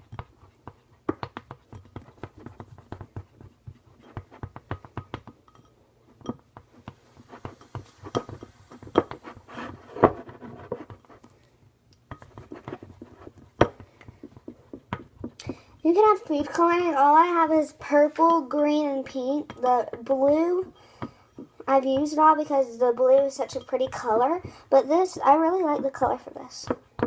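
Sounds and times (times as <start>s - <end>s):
utensil tapping a bowl: 0.0s - 11.1s, 12.1s - 15.6s
utensil scraping a bowl: 5.5s - 11.3s, 12.1s - 17.5s.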